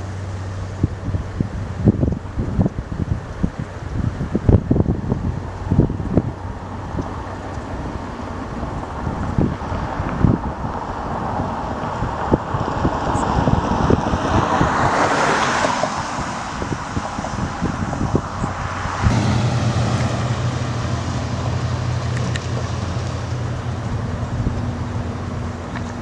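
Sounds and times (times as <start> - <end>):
low engine hum: 0.0 - 26.0
wind buffeting microphone: 0.1 - 26.0
vehicle passing: 6.4 - 26.0.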